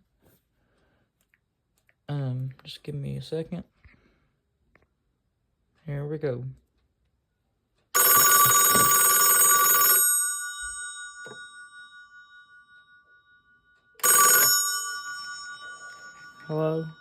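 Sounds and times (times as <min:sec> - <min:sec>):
telephone bell ringing: 0:08.0 - 0:17.0.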